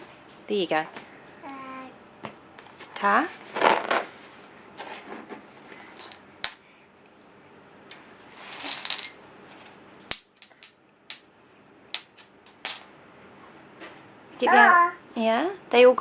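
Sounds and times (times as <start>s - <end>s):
coins clinking into piggy bank: 8.5s - 9.2s, 12.0s - 12.9s.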